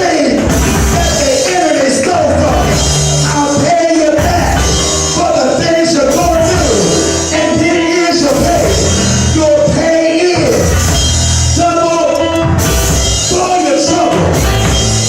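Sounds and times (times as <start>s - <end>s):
person singing: 0.0s - 10.8s
bass: 0.0s - 15.0s
cymbals: 0.0s - 15.0s.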